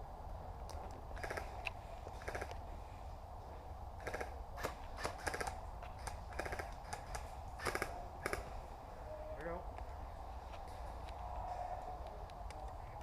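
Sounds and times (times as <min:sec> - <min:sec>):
airsoft guns firing: 0:04.0 - 0:08.5.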